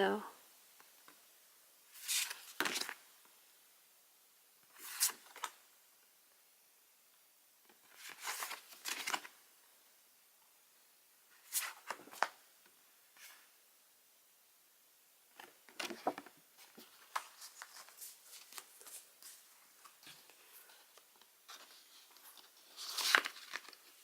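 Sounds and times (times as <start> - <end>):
postcards rustling: 1.9 - 3.0, 4.7 - 5.6, 7.8 - 9.4, 11.4 - 12.4, 15.4 - 24.0.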